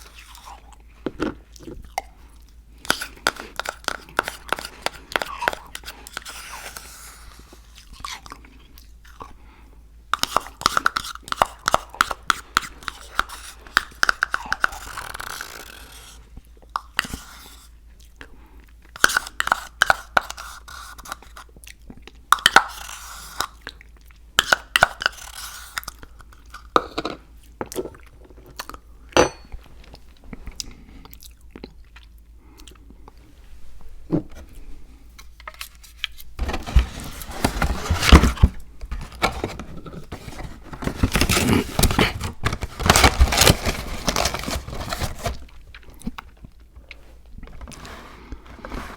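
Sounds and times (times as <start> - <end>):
chewing crunchy food: 0.0 - 9.4, 21.1 - 29.1, 29.8 - 33.3.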